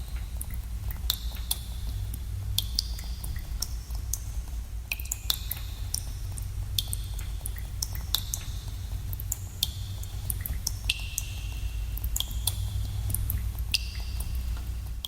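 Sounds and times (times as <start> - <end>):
steady low rumble: 0.0 - 15.0
water drops plinking echoing: 6.8 - 14.6.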